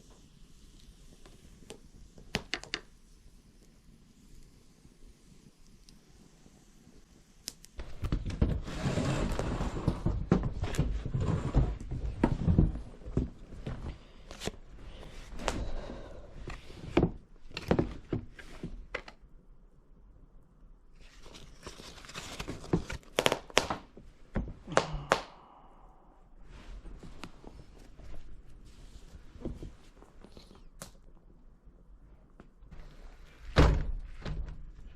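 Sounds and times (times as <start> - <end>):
rustling: 21.0 - 23.3.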